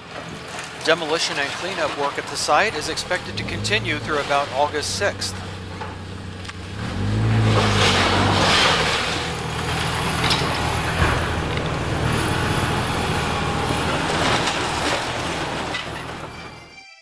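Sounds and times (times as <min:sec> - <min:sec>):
heavy machinery engine running: 0:02.1 - 0:16.8
debris knocks and clatter: 0:05.3 - 0:16.7.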